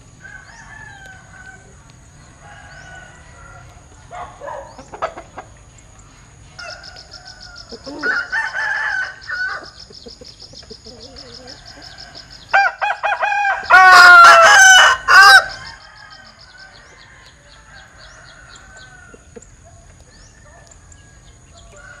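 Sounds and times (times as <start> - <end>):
rooster crowing: 0.2 - 1.8, 2.4 - 4.6, 6.6 - 9.8, 11.2 - 19.3, 20.2 - 22.0.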